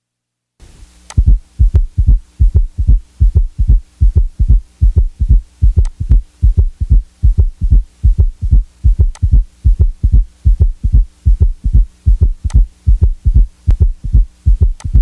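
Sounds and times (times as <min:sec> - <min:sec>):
faint steady hum: 0:00.0 - 0:15.0
sharp clicks: 0:01.0 - 0:01.3, 0:05.8 - 0:06.0, 0:09.0 - 0:09.4, 0:14.8 - 0:15.0
heartbeat thumps: 0:01.2 - 0:15.0.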